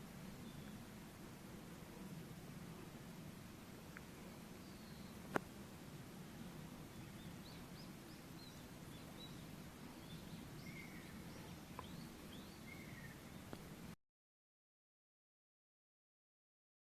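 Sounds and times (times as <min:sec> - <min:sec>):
small birds chirping: 0:00.0 - 0:01.1, 0:03.8 - 0:05.5, 0:06.2 - 0:14.0
background hiss: 0:00.0 - 0:14.0.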